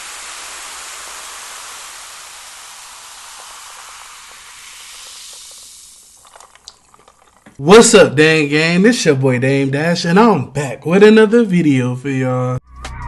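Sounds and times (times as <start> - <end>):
steady hiss: 0.0 - 7.6
faint crackles: 1.0 - 7.6.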